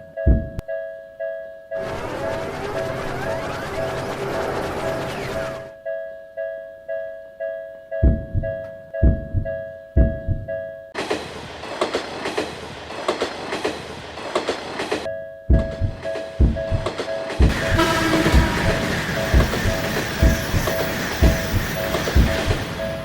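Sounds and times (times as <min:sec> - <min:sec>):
railroad crossing bell ringing: 0:01.2 - 0:07.9, 0:17.5 - 0:23.0
train rushing past: 0:01.8 - 0:05.7, 0:17.5 - 0:23.0
train wheels clacking on rail joints: 0:11.0 - 0:23.0.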